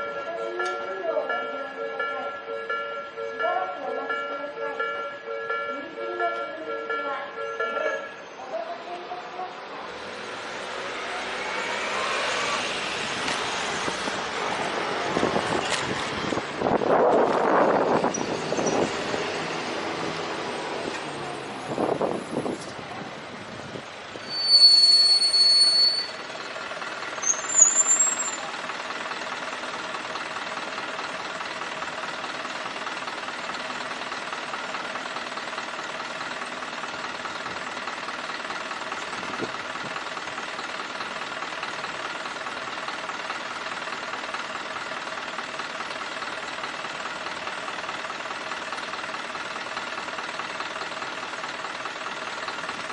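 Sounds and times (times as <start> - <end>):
traffic noise: 0.0 - 52.9
vehicle engine idling: 0.0 - 52.9
short rising squeak: 24.2 - 26.2, 27.2 - 28.4
high brake squeal: 24.2 - 26.3, 27.2 - 28.5.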